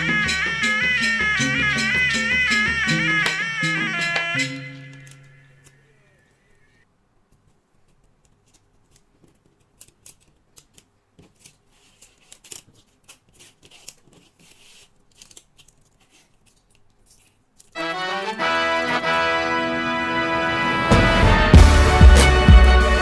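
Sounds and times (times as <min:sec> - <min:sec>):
paper clicks and snips: 0:07.3 - 0:17.8.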